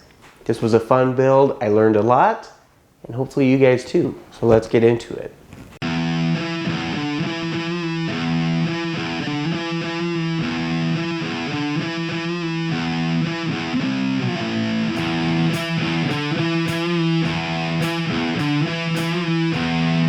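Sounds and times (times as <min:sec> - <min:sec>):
distorted electric guitar chords: 0:05.8 - 0:20.0
cymbal hits: 0:15.0 - 0:19.8.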